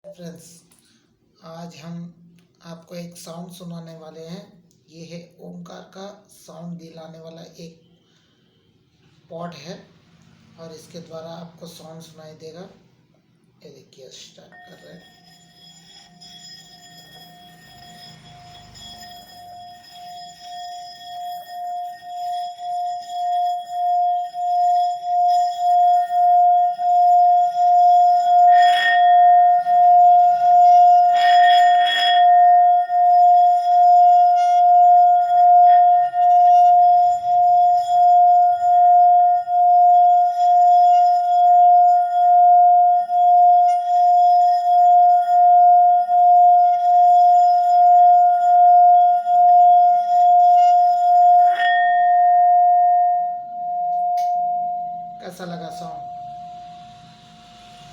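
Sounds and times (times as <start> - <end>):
singing bowl ringing: 14.4 - 57.9.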